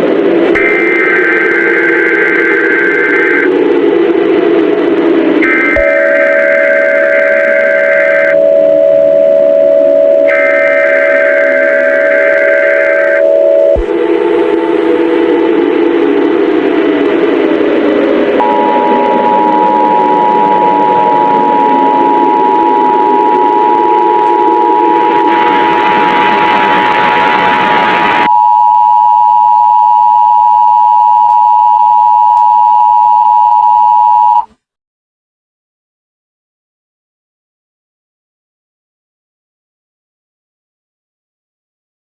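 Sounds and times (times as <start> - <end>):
rushing noise with siren-like tones: 0.0 - 28.4
two-tone alert signal: 18.4 - 27.3, 28.3 - 34.5.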